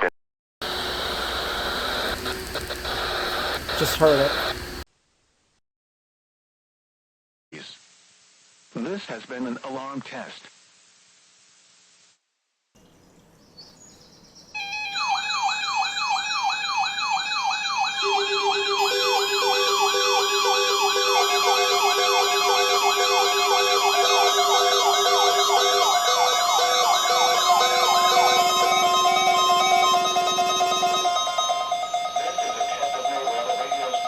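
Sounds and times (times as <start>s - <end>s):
electronic sirens wailing: 0.6s - 4.8s, 14.6s - 34.0s.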